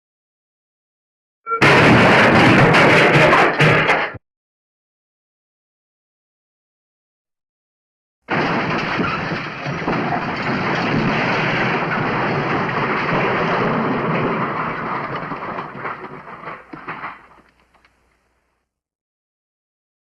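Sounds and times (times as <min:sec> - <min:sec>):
loud crashing and rumbling: 0:01.5 - 0:04.2, 0:08.3 - 0:18.3.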